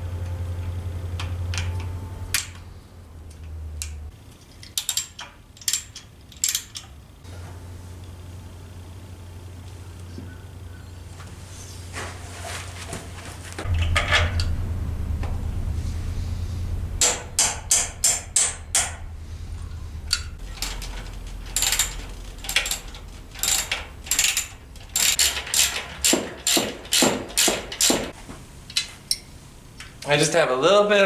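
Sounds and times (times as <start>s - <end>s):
ratcheting clicks: 3.3s - 7.0s, 20.1s - 28.0s.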